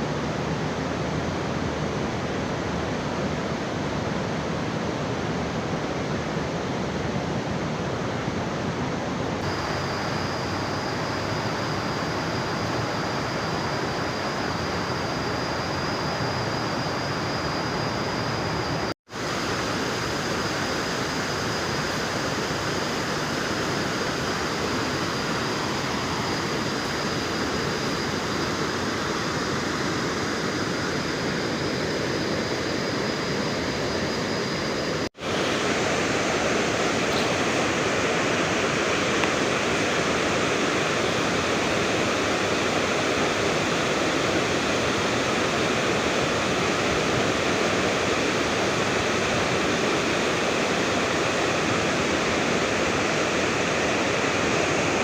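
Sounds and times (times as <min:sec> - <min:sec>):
thin high steady tone: 0:09.4 - 0:55.0
waterfall rushing: 0:34.9 - 0:55.0.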